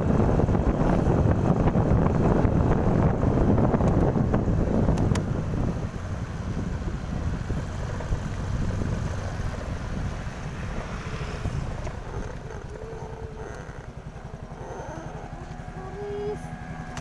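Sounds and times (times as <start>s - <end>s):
moving vehicle running: 0.0s - 17.0s
wind buffeting microphone: 0.0s - 17.0s.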